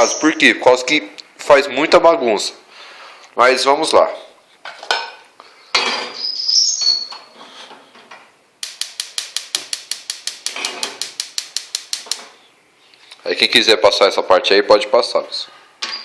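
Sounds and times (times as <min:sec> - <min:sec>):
gas stove igniter clicking: 0:08.6 - 0:12.4.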